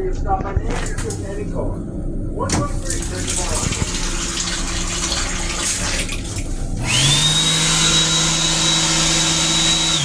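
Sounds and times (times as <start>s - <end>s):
water running: 0.7s - 1.8s, 2.4s - 10.0s
electric motor whining and rushing: 6.8s - 10.0s.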